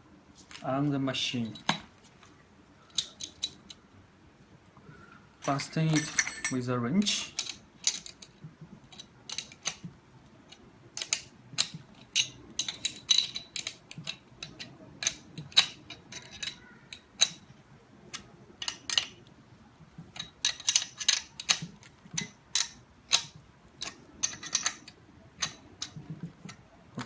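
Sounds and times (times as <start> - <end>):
wrench clicking and clinking: 5.4 - 6.6, 8.9 - 9.8, 10.5 - 17.4, 18.1 - 19.2, 20.2 - 26.0.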